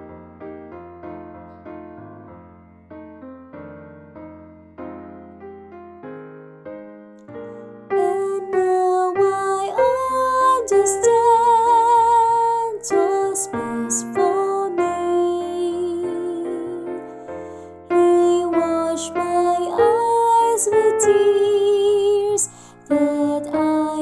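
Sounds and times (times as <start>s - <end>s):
piano accompaniment: 0.0s - 24.0s
soprano singing with vibrato: 7.9s - 17.3s, 17.9s - 24.0s.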